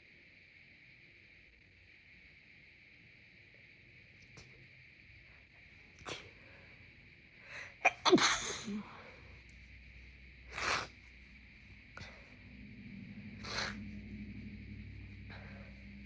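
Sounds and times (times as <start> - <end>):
faint steady hiss: 0.0 - 16.0
breathing: 5.2 - 7.8, 8.8 - 9.5, 12.0 - 12.6, 15.2 - 16.0
person sneezing: 7.7 - 9.1.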